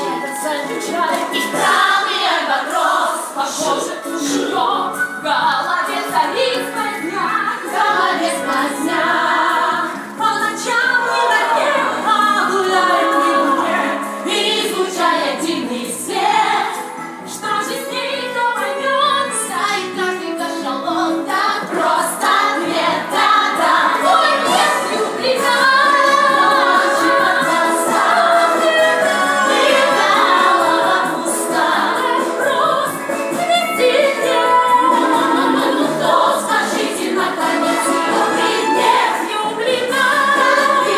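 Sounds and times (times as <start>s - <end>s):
musical accompaniment: 0.0s - 40.9s
voices singing together: 0.0s - 40.9s.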